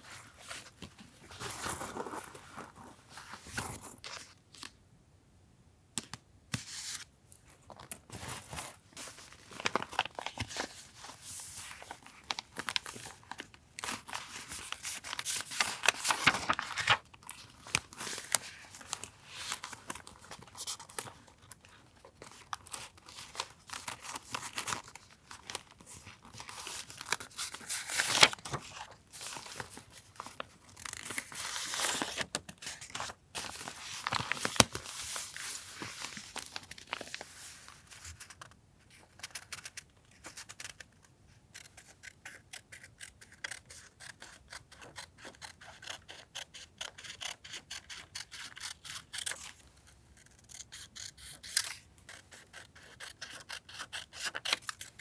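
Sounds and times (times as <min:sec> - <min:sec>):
paper crinkling and tearing: 0:08.2 - 0:21.3, 0:22.1 - 0:38.5.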